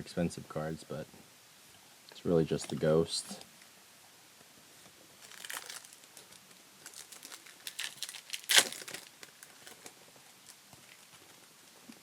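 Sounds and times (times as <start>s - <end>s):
foil pack tearing: 5.2s - 9.9s
foil wrapper crinkling: 5.2s - 11.0s.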